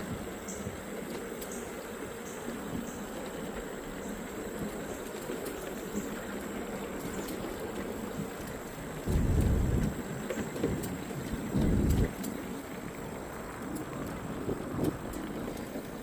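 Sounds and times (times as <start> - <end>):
bicycle rolling on trail: 0.0 - 16.0
wind buffeting microphone: 8.0 - 16.0.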